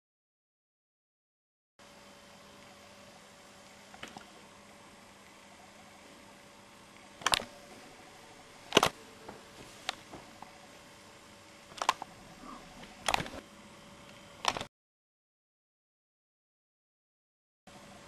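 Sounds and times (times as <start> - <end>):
faint steady hum: 1.8 - 14.7, 17.7 - 18.0
sharp clicks and knocks: 8.7 - 10.3.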